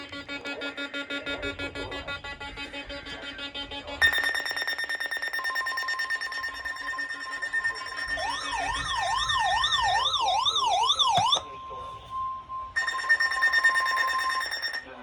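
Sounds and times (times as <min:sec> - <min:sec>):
siren-like warble: 0:00.0 - 0:15.0
high electronic alert tones: 0:04.0 - 0:11.4, 0:12.8 - 0:15.0.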